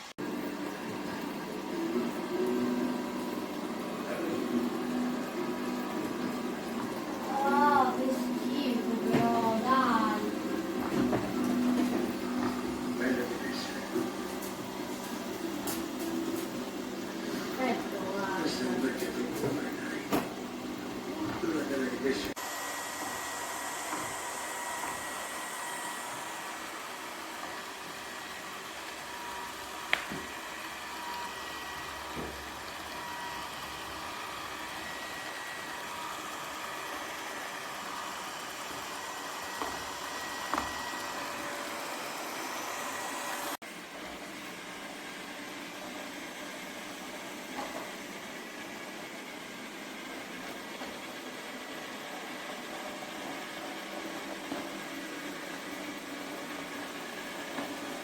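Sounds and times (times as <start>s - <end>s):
robot vacuum cleaner running: 0.0s - 58.0s.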